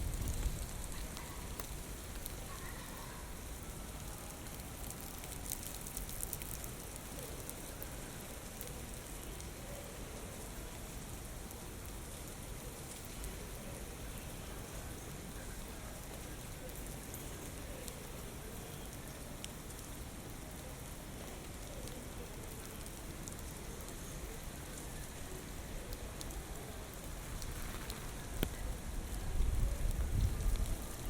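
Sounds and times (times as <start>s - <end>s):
low rumble of wind: 0.0s - 2.5s, 22.8s - 31.0s
raindrops ticking close by: 0.0s - 31.0s.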